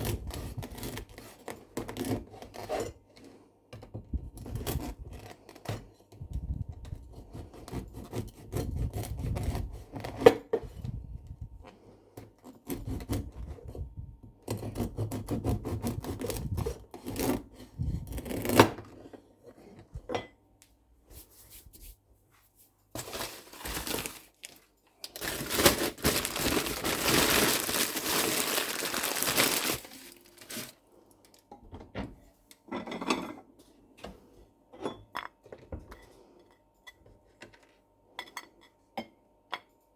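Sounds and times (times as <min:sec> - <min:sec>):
rubbing and scraping: 0:25.2 - 0:30.7.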